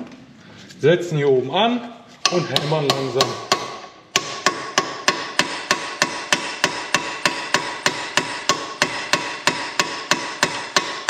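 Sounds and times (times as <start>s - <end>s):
hammer tapping on metal: 2.2s - 11.0s.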